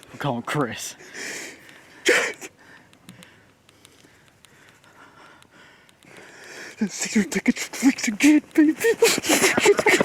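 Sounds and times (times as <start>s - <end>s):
faint breathing: 0.9s - 7.0s
small clicks: 1.6s - 1.9s, 2.6s - 8.8s.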